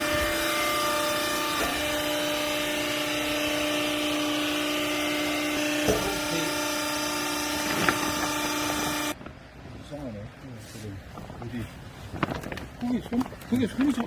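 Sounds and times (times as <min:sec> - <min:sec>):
pump motor humming: 0:00.0 - 0:09.2.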